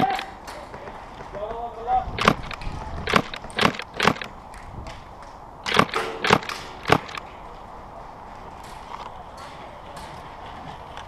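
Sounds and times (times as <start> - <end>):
airsoft gun shots: 2.2 - 4.4, 5.6 - 7.2.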